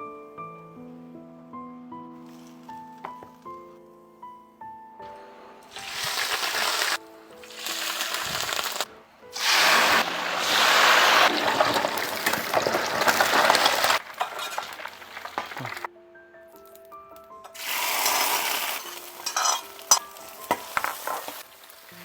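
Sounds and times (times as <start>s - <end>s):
soft piano music: 0.0s - 13.2s, 13.8s - 22.0s
loud hissing crackling noise: 5.3s - 15.9s, 17.6s - 22.0s.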